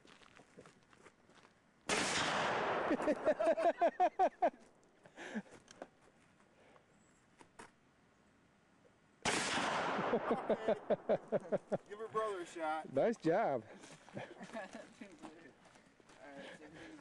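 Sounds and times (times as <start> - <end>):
handgun shot: 1.9 - 3.1, 9.3 - 10.4.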